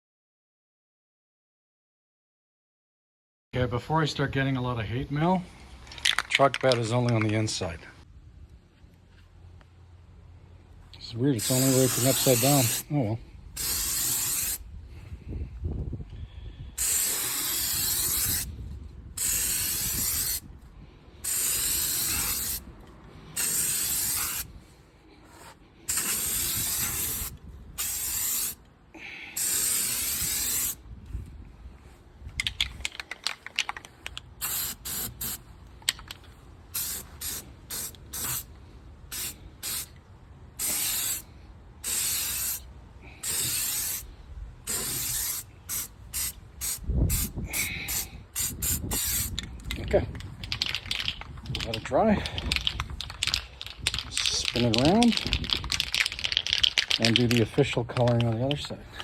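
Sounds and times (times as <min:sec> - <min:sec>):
aerosol can spraying: 0:11.4 - 0:12.9, 0:13.6 - 0:14.6, 0:16.8 - 0:18.5, 0:19.2 - 0:20.4, 0:21.2 - 0:22.6, 0:23.4 - 0:24.5, 0:25.3 - 0:28.6, 0:29.4 - 0:30.8, 0:34.4 - 0:35.4, 0:36.8 - 0:38.5, 0:39.1 - 0:39.9, 0:40.6 - 0:41.2, 0:41.8 - 0:42.6, 0:43.2 - 0:44.0, 0:44.7 - 0:49.4
rattling clicks: 0:32.4 - 0:34.3, 0:49.3 - 0:58.8.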